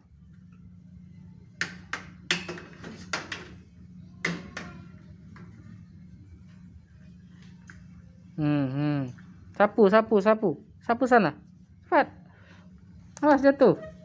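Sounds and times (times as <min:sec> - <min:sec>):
steady low hum: 0:00.0 - 0:14.0
hard objects knocking and clacking: 0:01.6 - 0:03.6.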